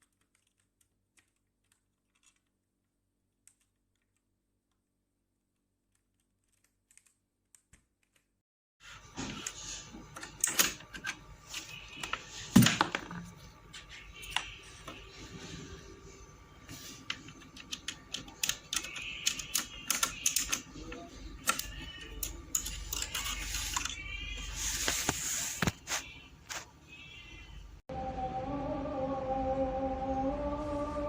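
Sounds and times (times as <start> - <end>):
mechanical keyboard keys clicking: 17.4 - 24.0
background music: 27.9 - 31.0.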